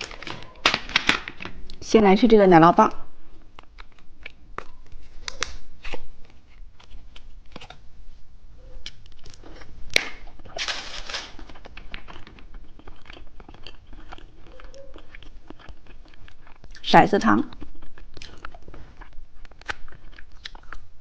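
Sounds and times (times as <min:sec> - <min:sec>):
wrapper tearing rustle: 0:00.0 - 0:01.5, 0:03.6 - 0:07.8, 0:08.9 - 0:15.2
plastic wrapper crinkling: 0:00.0 - 0:01.8, 0:03.5 - 0:07.8, 0:08.9 - 0:16.7
plastic wrapper snapping: 0:00.0 - 0:01.8, 0:03.5 - 0:07.8, 0:08.9 - 0:12.5.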